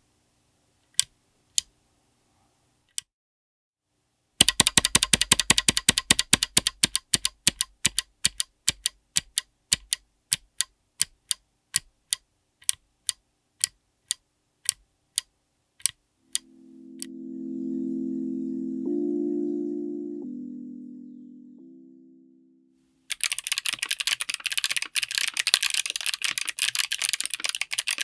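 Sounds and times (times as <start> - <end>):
mechanical keyboard clicks: 4.4 - 16.4, 23.1 - 28.0.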